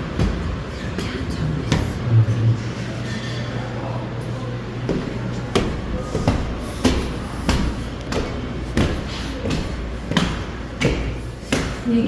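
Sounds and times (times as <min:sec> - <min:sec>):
footsteps on stairs: 0:00.0 - 0:02.0, 0:04.8 - 0:12.0.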